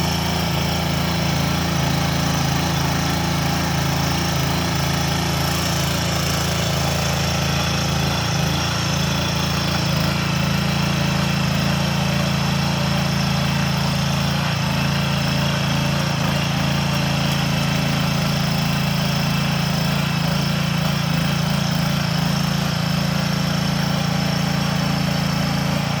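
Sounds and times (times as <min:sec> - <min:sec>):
small tiller engine running: 0:00.0 - 0:26.0.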